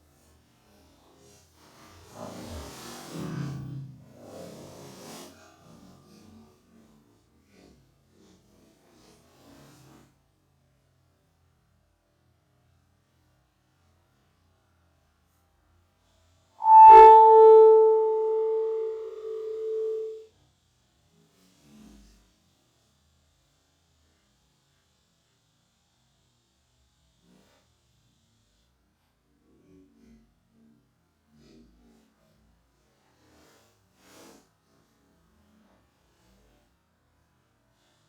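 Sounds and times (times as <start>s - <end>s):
slowed electronic tone: 16.6s - 20.2s.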